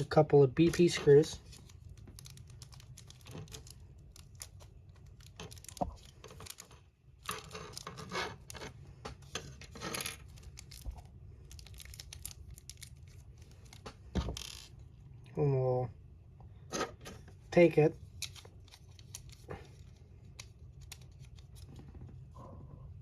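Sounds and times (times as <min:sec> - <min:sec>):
plastic bag rustling and tearing: 0:00.8 - 0:08.7
small parts clicking: 0:09.3 - 0:14.7.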